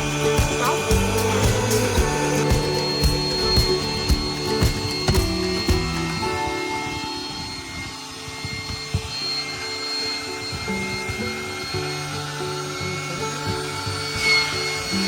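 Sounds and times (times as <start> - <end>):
background music low notes: 0.0 - 8.2.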